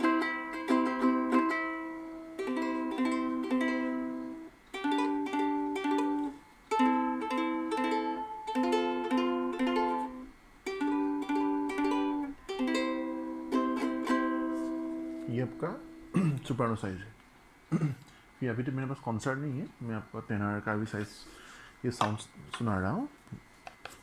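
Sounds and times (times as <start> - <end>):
ukulele strumming: 0.0 - 16.5.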